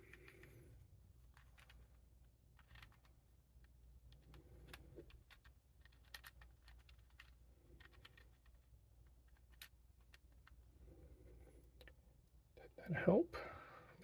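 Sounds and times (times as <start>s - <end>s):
puzzle cube clicking: 1.3s - 10.6s.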